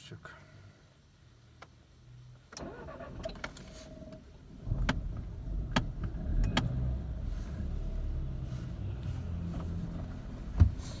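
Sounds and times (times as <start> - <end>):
car engine running: 4.2 - 11.0.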